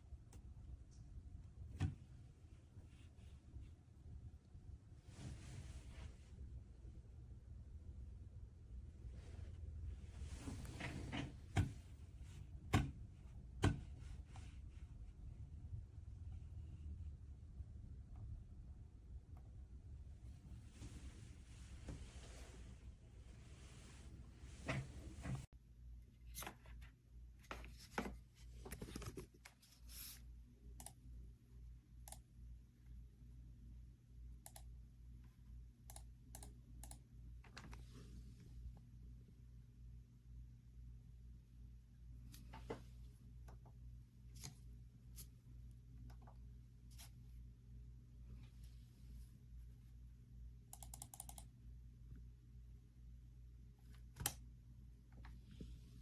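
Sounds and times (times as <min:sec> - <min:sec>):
low steady hum: 0:00.0 - 0:56.0
faint keyboard clicks: 0:34.4 - 0:34.7, 0:50.7 - 0:51.5.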